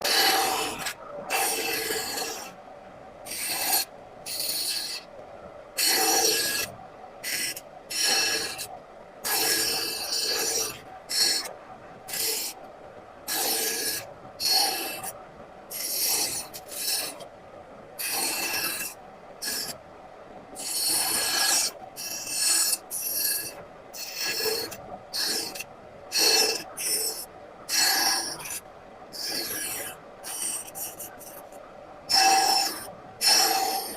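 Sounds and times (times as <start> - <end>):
hand tool scraping wood: 32.1 - 33.9.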